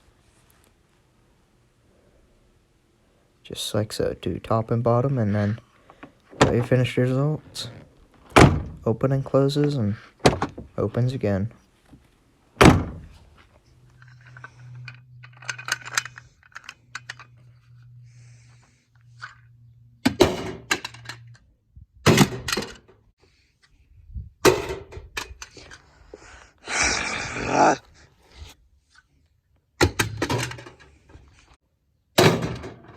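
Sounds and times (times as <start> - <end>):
car door shutting: 7.6 - 8.8, 12.6 - 13.1.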